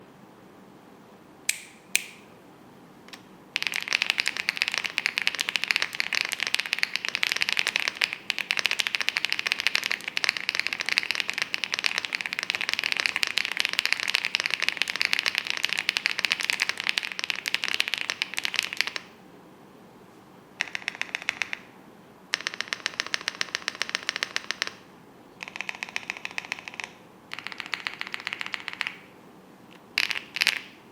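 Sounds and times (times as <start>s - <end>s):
mechanical keyboard typing: 3.6s - 19.1s, 20.6s - 21.7s, 22.3s - 24.8s, 25.4s - 29.1s, 29.8s - 30.8s.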